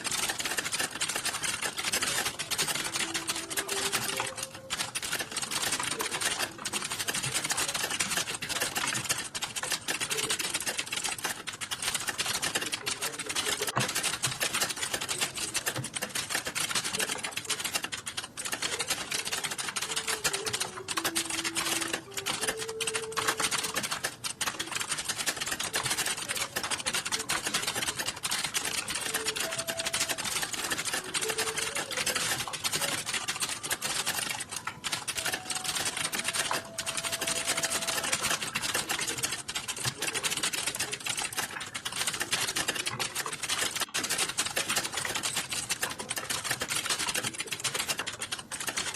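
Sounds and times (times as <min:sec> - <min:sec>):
fast typing on keyboard: 0:00.0 - 0:48.9.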